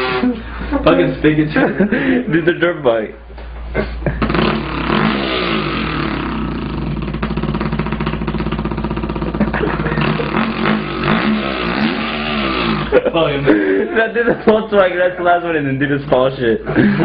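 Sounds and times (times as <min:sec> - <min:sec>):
man imitating engine with mouth: 0:00.0 - 0:00.5, 0:03.8 - 0:13.1.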